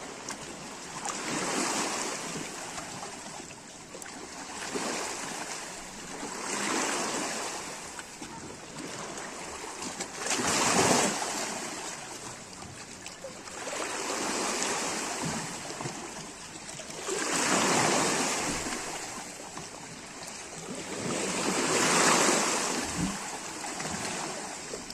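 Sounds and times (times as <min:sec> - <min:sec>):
sea waves breaking on shore: 0:00.0 - 0:24.9.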